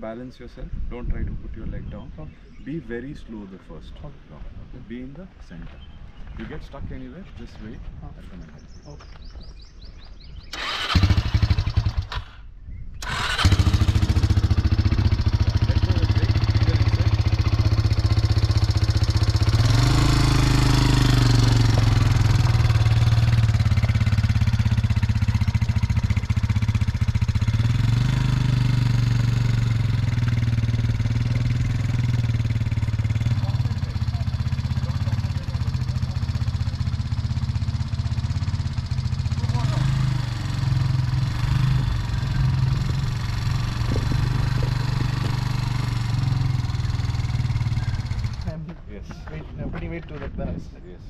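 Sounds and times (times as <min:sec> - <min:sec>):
quad bike engine: 0:10.5 - 0:12.4, 0:13.0 - 0:49.5.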